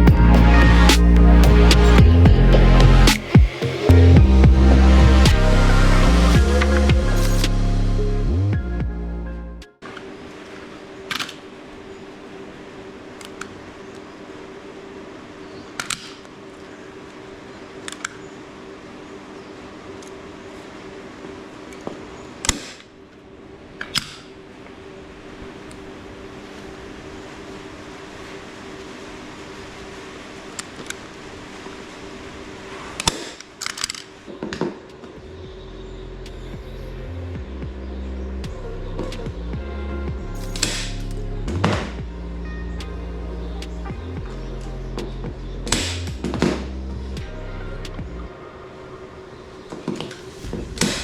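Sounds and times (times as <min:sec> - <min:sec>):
steady low hum: 0:00.0 - 0:09.3
electronic music: 0:00.0 - 0:09.8, 0:35.2 - 0:51.0.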